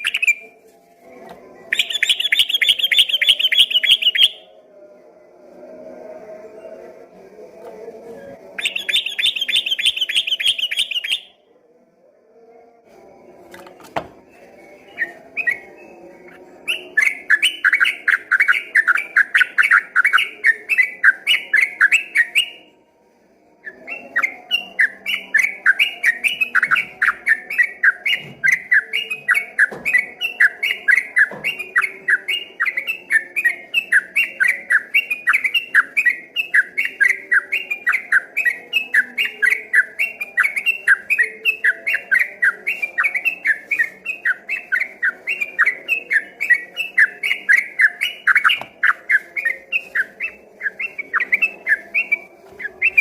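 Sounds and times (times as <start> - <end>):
bulbul singing chattering notes: 1.7 - 4.4, 8.6 - 11.3.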